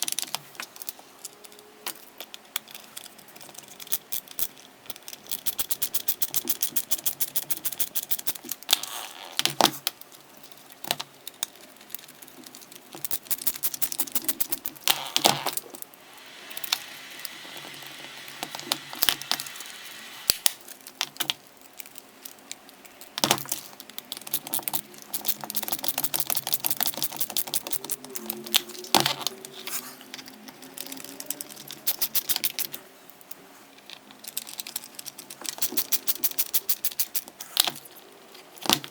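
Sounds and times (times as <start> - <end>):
small parts rattling: 0.0 - 38.9
ratcheting screwdriver clicking: 24.1 - 29.3, 30.2 - 32.8, 34.2 - 37.8.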